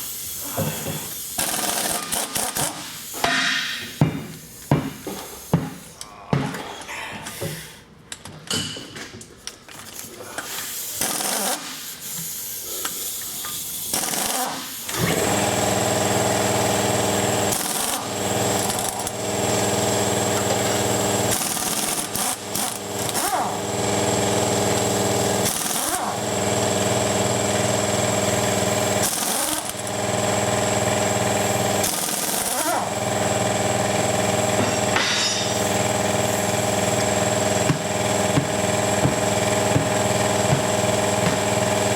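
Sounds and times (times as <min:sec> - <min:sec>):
motor humming and whining: 0:14.9 - 0:41.9.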